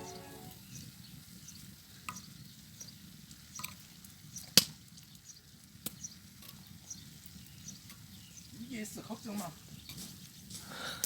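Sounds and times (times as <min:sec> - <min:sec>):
wood fire crackling: 0:00.0 - 0:11.0
sharp pop from fire: 0:04.5 - 0:05.0, 0:05.8 - 0:06.0.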